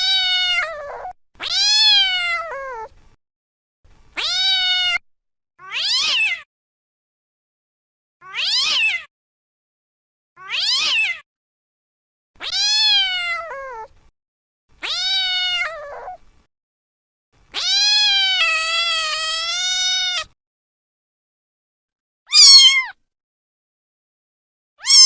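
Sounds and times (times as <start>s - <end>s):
cat meowing: 0.0s - 2.9s, 4.2s - 5.0s, 5.6s - 6.5s, 8.2s - 9.1s, 10.4s - 11.2s, 12.4s - 13.9s, 14.8s - 16.2s, 17.5s - 20.4s, 22.3s - 23.0s, 24.8s - 25.0s.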